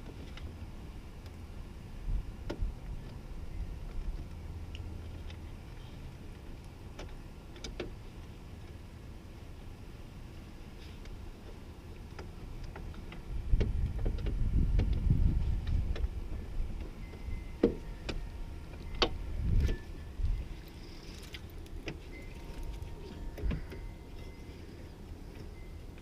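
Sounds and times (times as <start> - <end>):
rumbling handling noise: 9.6 - 26.0.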